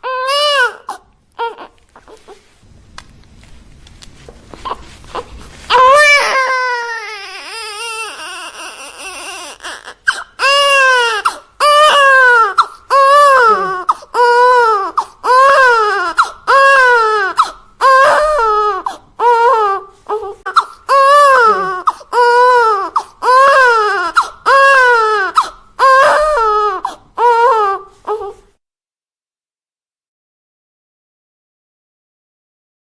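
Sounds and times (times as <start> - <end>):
infant crying: 0.0 - 2.4, 4.6 - 28.5.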